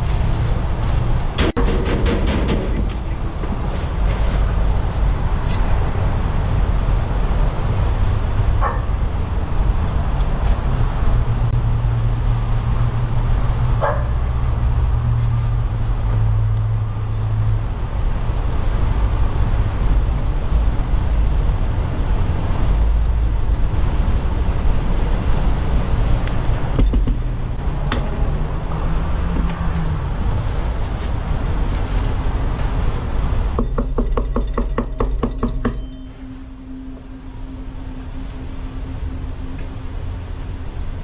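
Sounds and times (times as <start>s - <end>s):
low hum: 0.0s - 41.0s
dog barking: 8.6s - 8.9s, 13.8s - 14.1s.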